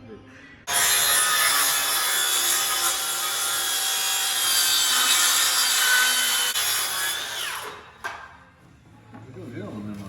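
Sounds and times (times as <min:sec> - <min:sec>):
electric power saw cutting wood: 0:00.7 - 0:07.9.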